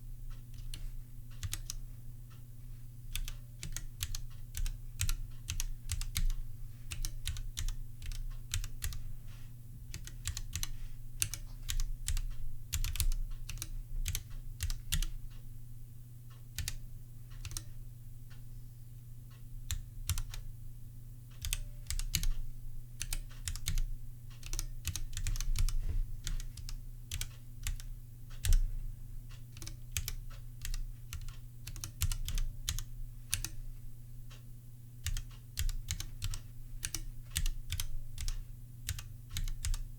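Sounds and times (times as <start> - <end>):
steady low hum: 0.0 - 39.9
mechanical keyboard typing: 1.4 - 1.8, 3.1 - 9.0, 9.9 - 15.2, 16.6 - 16.8, 17.4 - 17.7, 19.7 - 20.4, 21.4 - 22.4, 23.0 - 28.7, 29.4 - 33.6, 35.0 - 39.9.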